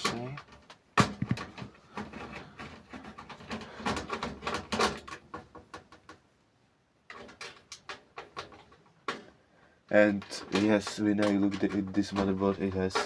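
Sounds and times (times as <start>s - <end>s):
computer parts clicking and scraping: 0.0s - 5.5s, 9.9s - 13.0s.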